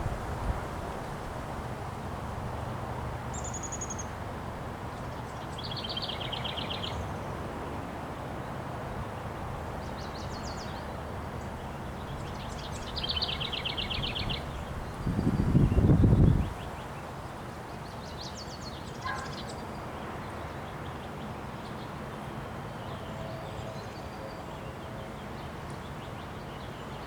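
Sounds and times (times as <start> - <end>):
wind noise: 0.0 - 1.9, 14.0 - 16.8.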